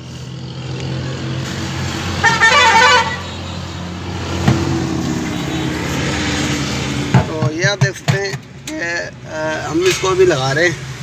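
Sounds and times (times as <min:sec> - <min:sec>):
hum of passing traffic: 0:00.0 - 0:11.0
vehicle horn: 0:02.2 - 0:04.0, 0:05.2 - 0:06.0.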